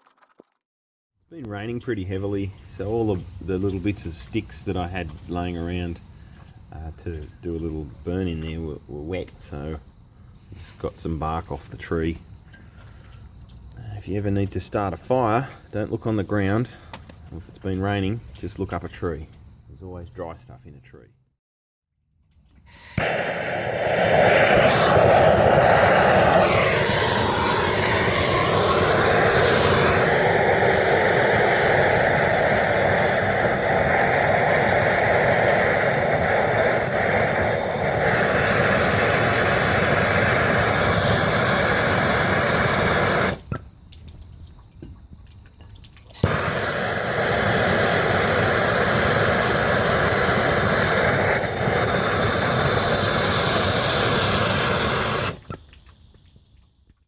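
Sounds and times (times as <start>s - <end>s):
leaf blower running: 22.8s - 43.4s, 46.2s - 55.4s.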